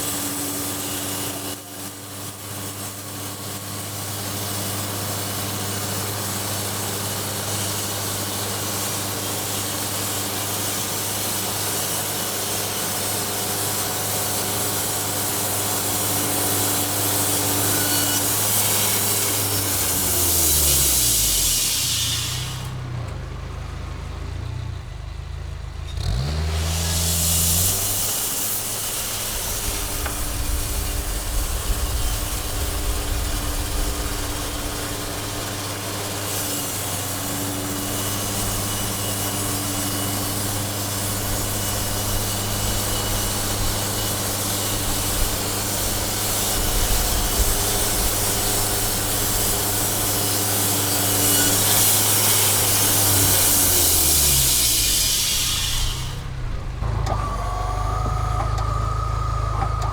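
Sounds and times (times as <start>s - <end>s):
sawmill machine hum: 0.0s - 59.9s
saw blade hissing through wood: 6.6s - 23.0s, 25.9s - 56.6s.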